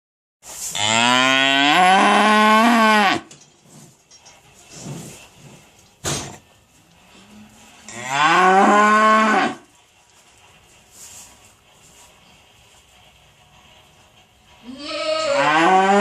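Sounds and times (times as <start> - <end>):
cow mooing: 0.8 - 3.3, 7.4 - 9.6, 14.7 - 16.0.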